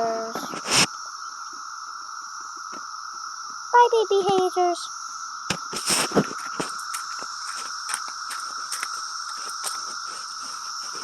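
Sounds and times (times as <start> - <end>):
cicadas buzzing: 0.0 - 11.0
rustle: 5.4 - 11.0.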